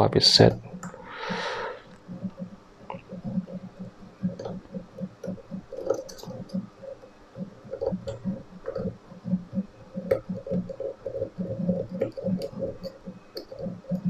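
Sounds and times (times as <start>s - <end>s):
lock pick ticking and scraping: 3.2s - 14.0s.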